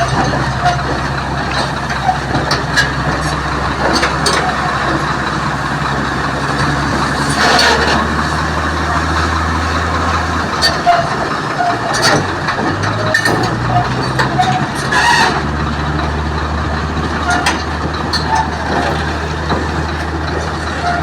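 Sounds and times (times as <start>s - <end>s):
excavator diesel engine under load: 0.0s - 21.0s.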